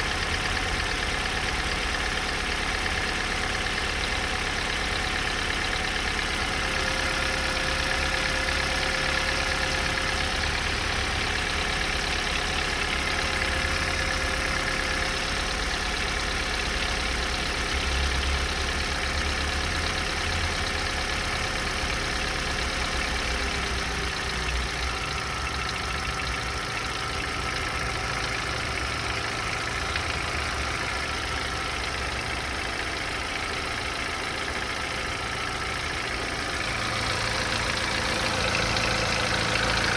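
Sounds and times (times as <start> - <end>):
car engine idling with a knock: 0.0 - 39.9.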